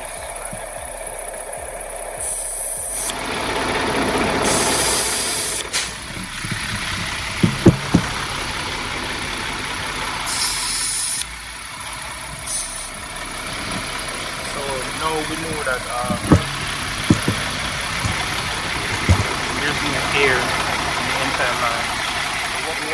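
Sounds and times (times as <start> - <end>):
engine-like running noise: 0.0 - 22.9
refrigerant hissing from a hose: 0.0 - 22.9.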